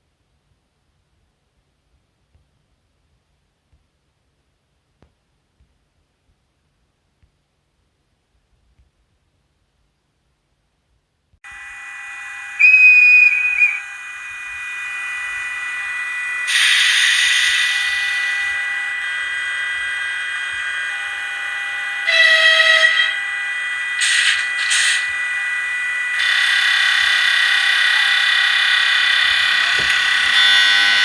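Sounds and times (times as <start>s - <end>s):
high electric whine: 11.4s - 31.0s
wavering high whistle: 11.5s - 31.0s.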